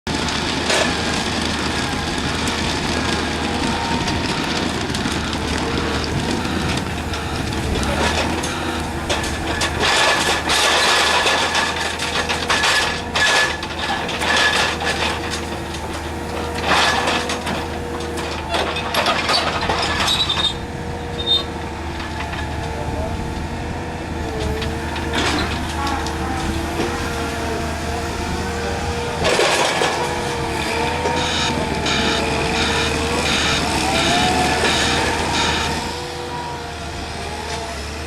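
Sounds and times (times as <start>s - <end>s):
excavator hydraulic whine: 0.6s - 38.0s
clanks and scrapes of heavy material: 7.5s - 20.6s.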